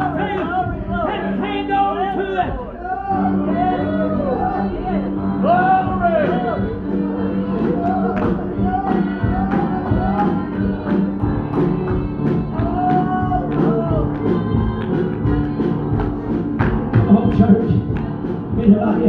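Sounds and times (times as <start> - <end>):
person singing: 2.8 - 16.4, 17.0 - 19.0.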